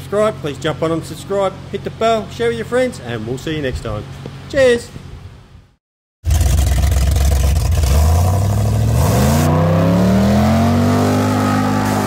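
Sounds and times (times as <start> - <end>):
car engine revving: 6.3 - 12.0.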